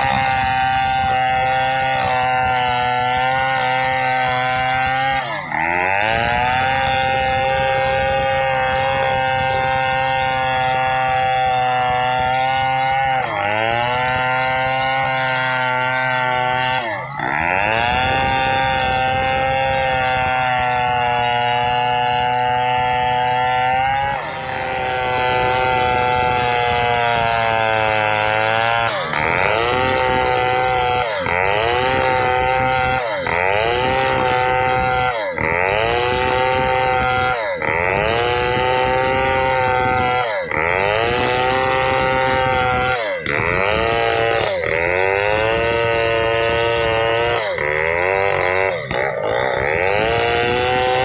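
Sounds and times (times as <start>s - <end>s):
chainsaw cutting wood: 0.0s - 51.0s.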